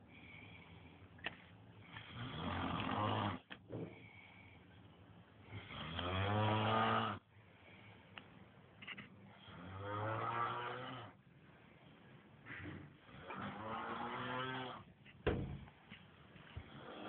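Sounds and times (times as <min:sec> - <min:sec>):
quiet breathing: 0:00.0 - 0:06.2, 0:07.0 - 0:17.0
man snoring: 0:02.0 - 0:03.5, 0:05.6 - 0:07.2, 0:09.4 - 0:11.2, 0:13.1 - 0:14.9, 0:16.6 - 0:17.0.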